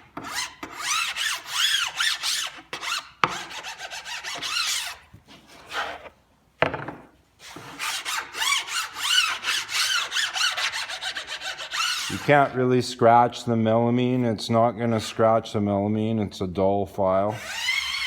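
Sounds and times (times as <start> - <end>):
hand file rasping: 0.0 - 6.1, 7.4 - 12.5, 17.4 - 18.0.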